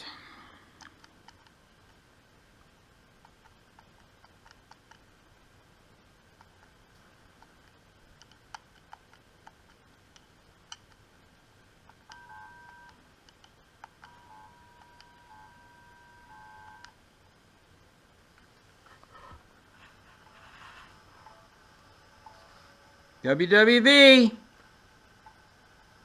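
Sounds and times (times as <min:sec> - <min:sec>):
faint radio receiver audio: 0:00.0 - 0:26.0
scattered clicks: 0:00.8 - 0:02.0, 0:03.2 - 0:05.1, 0:06.4 - 0:11.1, 0:11.8 - 0:15.2, 0:16.7 - 0:17.0
steady time-signal tone: 0:12.1 - 0:13.0, 0:14.0 - 0:16.9, 0:20.2 - 0:23.4.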